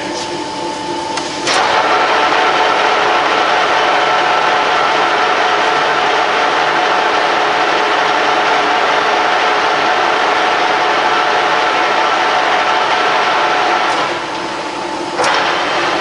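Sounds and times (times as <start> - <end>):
lathe running with whining tones: 0.0 - 16.0.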